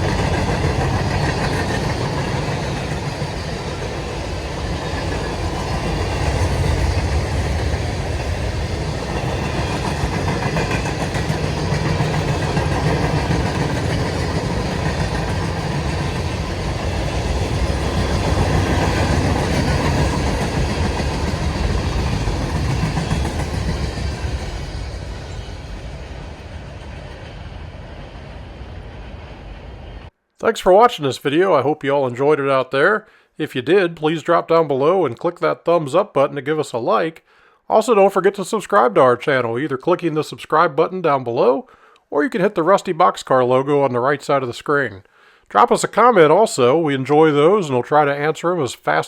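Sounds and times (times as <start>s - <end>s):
train wheels clattering: 0.0s - 28.2s
freight train rumbling past: 0.0s - 30.1s.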